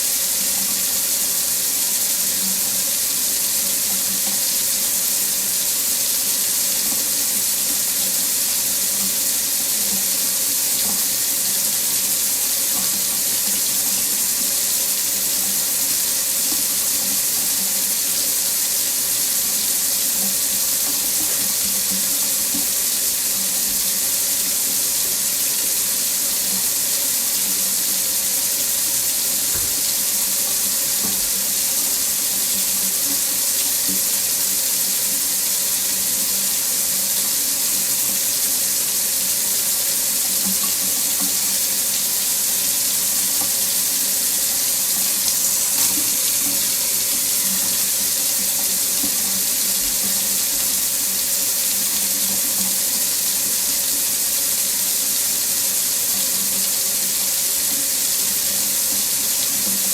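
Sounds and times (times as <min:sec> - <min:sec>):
tap running into sink: 0:09.8 - 0:18.6, 0:19.3 - 0:23.9, 0:27.4 - 0:34.2, 0:40.2 - 0:50.8.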